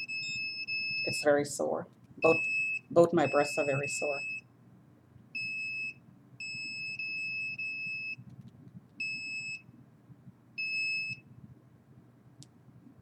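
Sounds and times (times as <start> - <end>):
electronic device beeping: 2.2 - 4.4.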